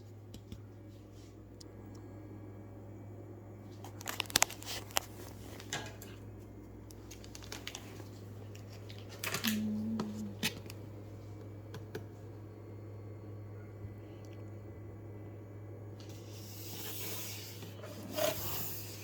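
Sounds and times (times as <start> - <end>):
packaging clicks and rustles: 3.8 - 5.7, 6.9 - 9.7.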